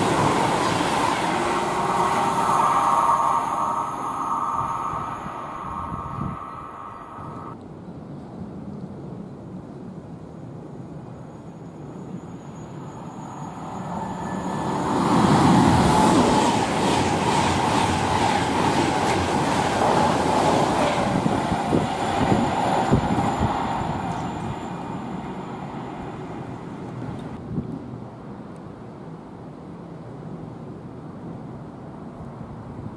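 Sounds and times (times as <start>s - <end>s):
train rushing past: 0.0s - 7.6s, 11.8s - 27.4s.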